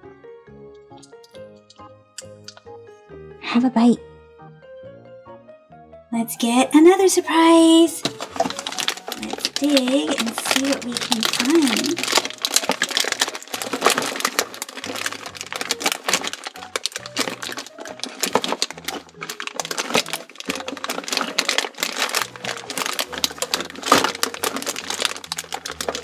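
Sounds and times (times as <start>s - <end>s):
faint background music: 0.0s - 26.0s
crinkling and rustling of wrappers: 6.9s - 26.0s.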